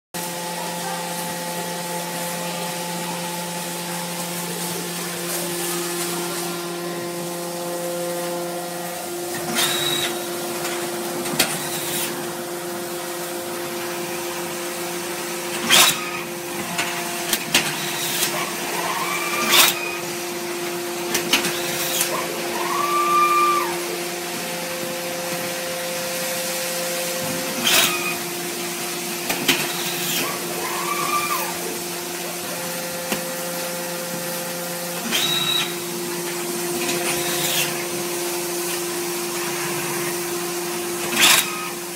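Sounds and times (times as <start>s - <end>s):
pump motor hum: 0.2s - 41.9s
machine squeals: 9.5s - 10.3s, 17.8s - 20.1s, 27.6s - 28.2s, 35.1s - 35.8s
machine clanks: 15.5s - 19.9s, 21.1s - 22.3s, 29.2s - 30.4s, 41.0s - 41.8s.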